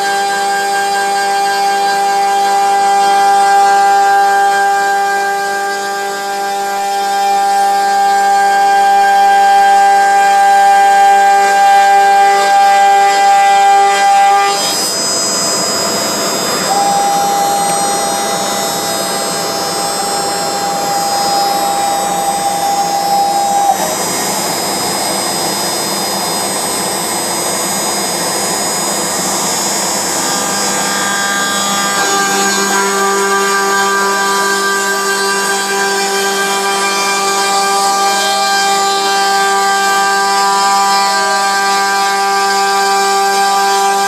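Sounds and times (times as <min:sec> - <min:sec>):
router bit cutting wood: 0:00.0 - 0:44.0
router spindle whine: 0:00.0 - 0:44.0.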